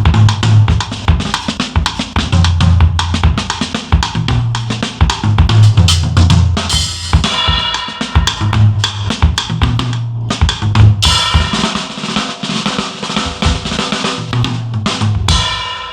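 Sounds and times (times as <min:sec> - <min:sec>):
drum kit groove: 0:00.0 - 0:15.9
cymbal crashes: 0:05.6 - 0:09.2, 0:15.3 - 0:15.9.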